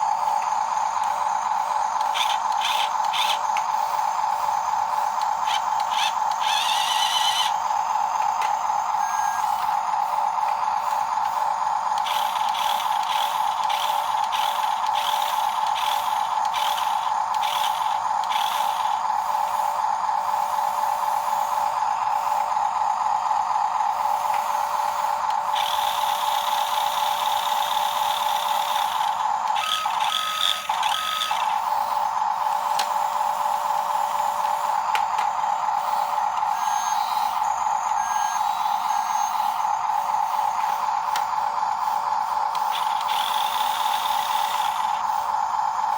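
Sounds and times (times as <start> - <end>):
electric motors whining: 0.0 - 45.9.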